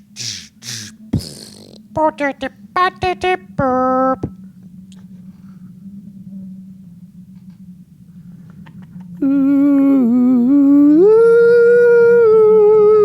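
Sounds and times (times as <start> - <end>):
person humming eerie note: 0.0 - 7.0, 8.2 - 13.0
faint low drone: 0.0 - 13.0.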